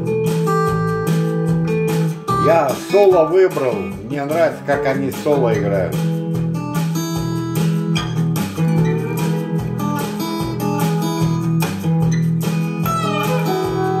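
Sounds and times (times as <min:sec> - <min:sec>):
bass line of low notes: 0:00.0 - 0:14.0
guitar music with solo: 0:00.0 - 0:14.0.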